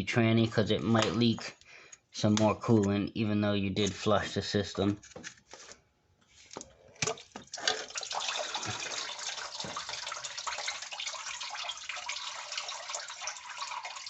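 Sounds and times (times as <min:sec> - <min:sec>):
coolant trickling into drain pan: 0:07.0 - 0:14.0.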